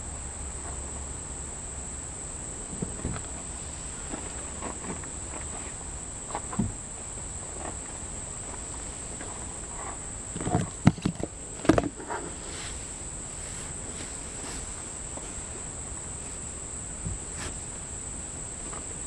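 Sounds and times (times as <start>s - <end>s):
rubbing or handling noises: 8.6s - 15.6s, 17.1s - 17.7s.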